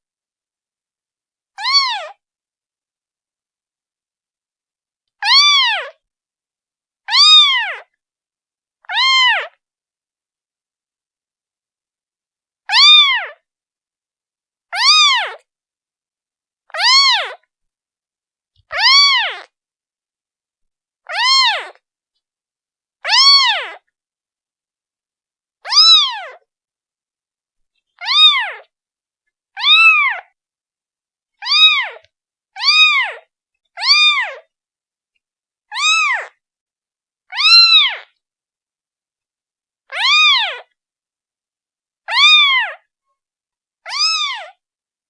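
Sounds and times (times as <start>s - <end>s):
kitten meowing: 1.6s - 2.2s, 5.2s - 5.9s, 7.1s - 7.8s, 8.9s - 9.6s, 12.7s - 13.4s, 14.8s - 15.4s, 16.8s - 17.4s, 18.7s - 19.5s, 21.1s - 21.8s, 23.0s - 23.8s, 25.6s - 26.4s, 28.0s - 28.7s, 29.6s - 30.3s, 31.4s - 32.0s, 32.6s - 34.4s, 35.7s - 36.4s, 37.3s - 38.1s, 39.9s - 40.7s, 42.1s - 42.8s, 43.9s - 44.6s.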